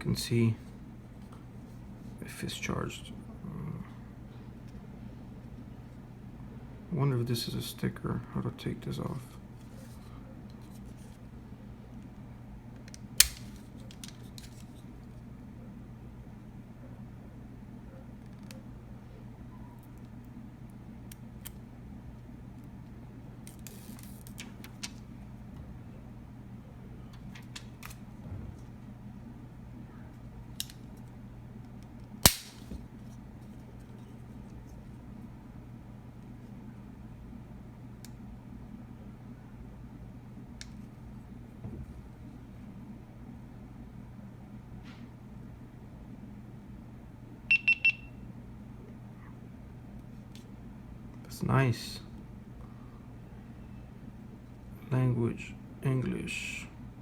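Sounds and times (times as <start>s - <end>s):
steady low hum: 0.0s - 57.0s
sharp click: 13.2s - 13.6s, 32.2s - 32.8s
plastic camera handling clicks: 13.2s - 14.7s.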